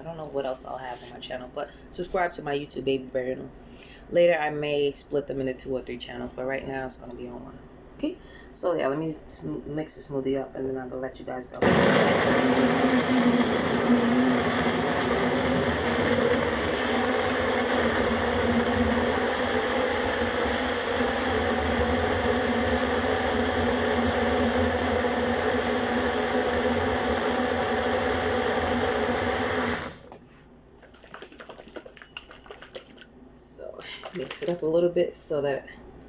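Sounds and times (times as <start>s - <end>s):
blender running: 11.6s - 30.0s.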